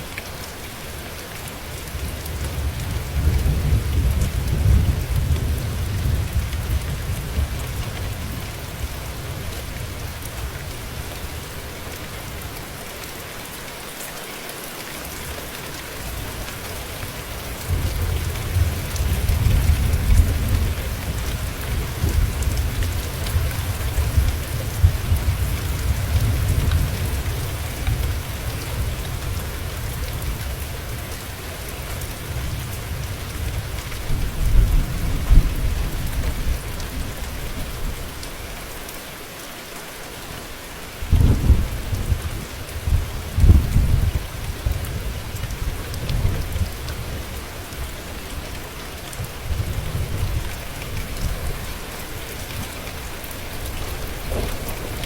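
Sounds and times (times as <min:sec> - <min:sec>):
rain hissing: 0:00.0 - 0:55.0
rolling thunder: 0:41.1 - 0:47.2, 0:53.6 - 0:55.0.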